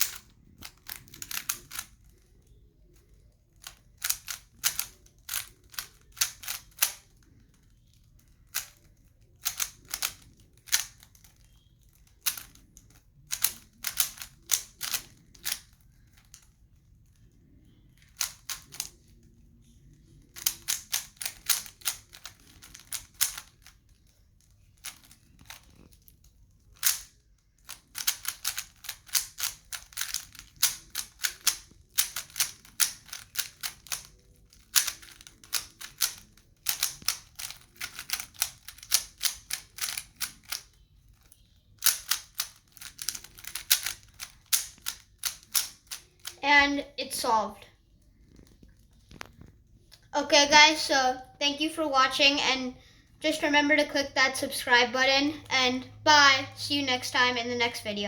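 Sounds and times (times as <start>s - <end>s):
puzzle cube plastic clicking: 0.0s - 46.4s.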